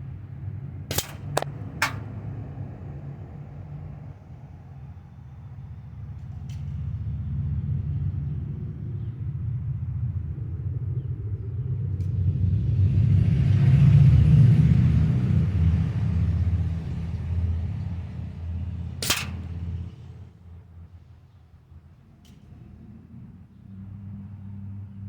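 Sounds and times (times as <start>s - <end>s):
pellet striking metal tank: 0.9s - 2.6s, 19.0s - 19.9s.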